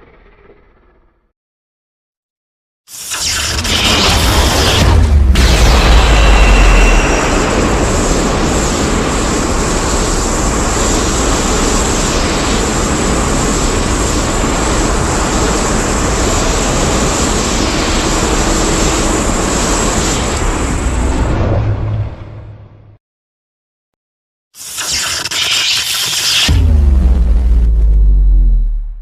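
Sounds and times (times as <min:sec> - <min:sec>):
loud steady rushing noise: 0:03.1 - 0:21.7.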